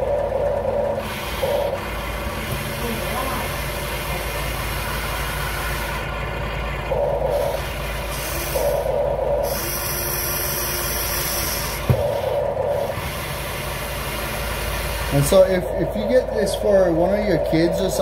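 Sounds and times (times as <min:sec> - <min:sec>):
toy excavator mechanical hum: 0:00.0 - 0:18.0
motor whirring bursts: 0:07.3 - 0:15.4.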